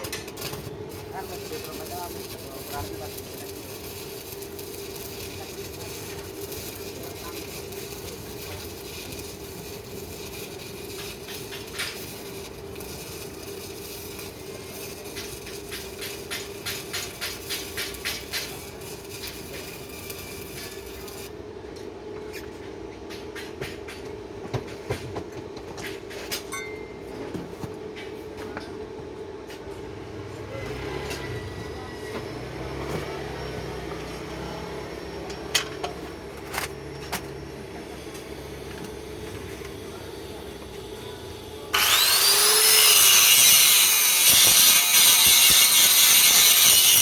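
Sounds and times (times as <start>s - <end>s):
arc welding crackling hiss: 0.0s - 21.4s, 41.7s - 47.0s.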